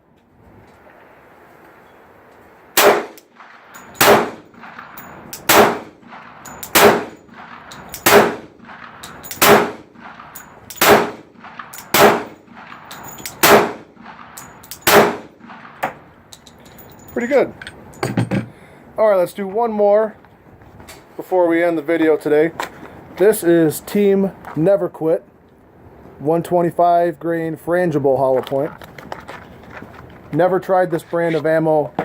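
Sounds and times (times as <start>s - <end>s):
pistol shots: 2.8s - 16.0s.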